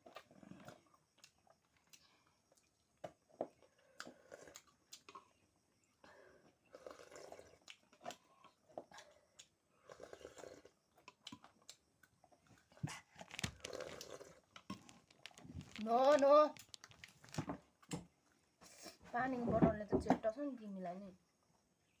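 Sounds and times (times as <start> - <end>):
person chewing food: 0.0 - 5.4, 6.8 - 17.9.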